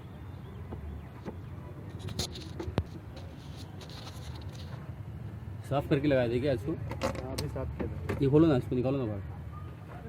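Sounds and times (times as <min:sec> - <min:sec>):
engine parts clicking and knocking: 0:06.7 - 0:08.5.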